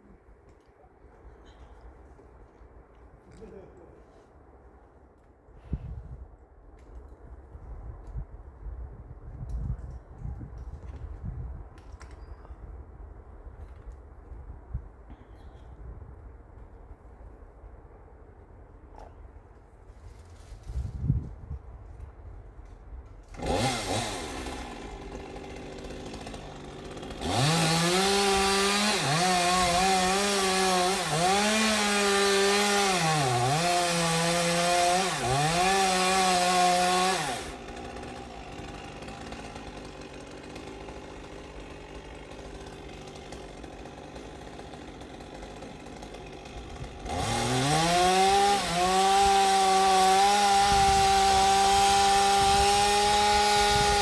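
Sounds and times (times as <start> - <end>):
chainsaw revving: 23.3 - 54.0.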